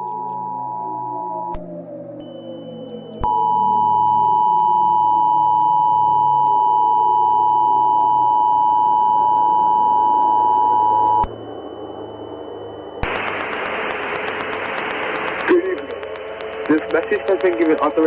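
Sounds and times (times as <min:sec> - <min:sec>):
faint low ambient drone: 0:00.0 - 0:18.0
loud two-tone alert signal: 0:02.2 - 0:11.3.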